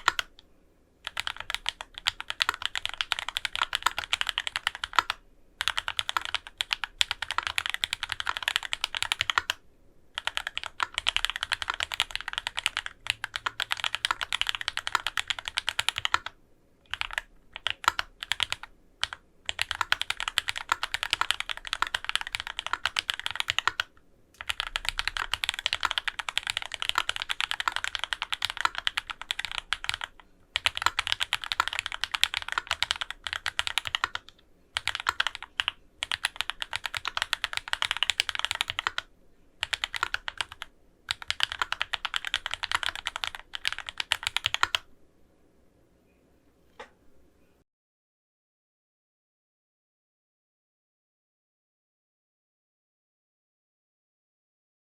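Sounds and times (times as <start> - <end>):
fast mechanical keyboard typing: 0.0 - 0.4, 1.0 - 9.6, 10.2 - 44.9.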